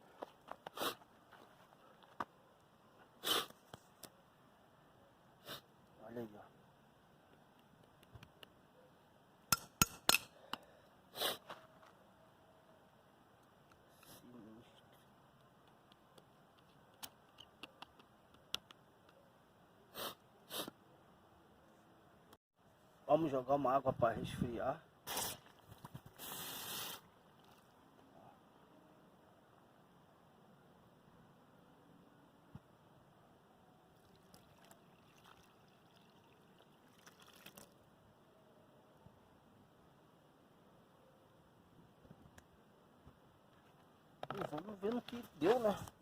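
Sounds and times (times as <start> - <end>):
water pouring onto hot metal: 34.0 - 37.7.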